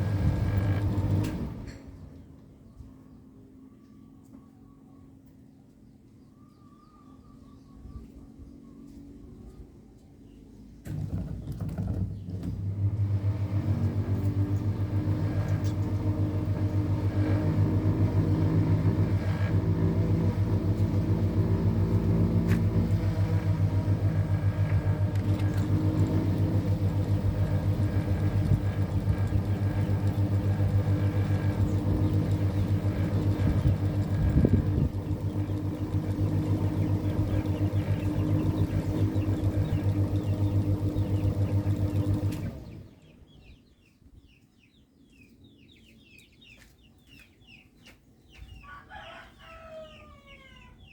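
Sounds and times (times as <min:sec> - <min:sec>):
ceiling fan motor humming: 0:00.0 - 0:02.7, 0:10.8 - 0:43.6.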